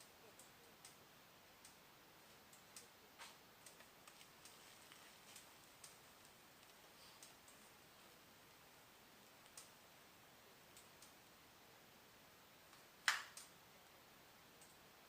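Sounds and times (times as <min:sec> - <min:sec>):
faint clicks: 0:00.0 - 0:01.0, 0:01.6 - 0:10.0, 0:10.6 - 0:11.4, 0:12.7 - 0:13.6, 0:14.5 - 0:14.9
faint steady hiss: 0:00.0 - 0:15.0.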